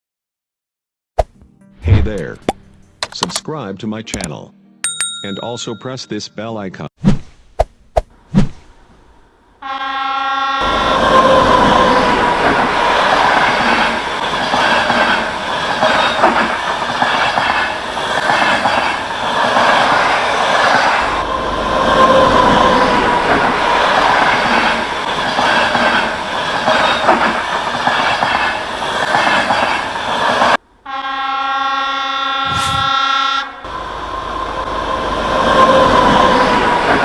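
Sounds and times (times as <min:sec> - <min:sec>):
multi-note train horn: 0:09.5 - 0:12.0, 0:30.8 - 0:34.2
train clattering on rails: 0:10.6 - 0:30.6.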